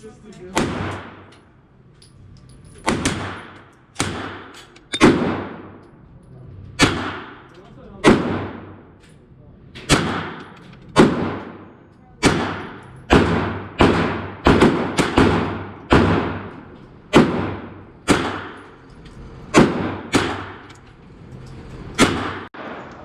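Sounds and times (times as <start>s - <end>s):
gunshots with echo: 2.9s - 5.8s, 6.8s - 8.9s, 9.9s - 18.8s, 19.5s - 20.7s, 22.0s - 23.0s.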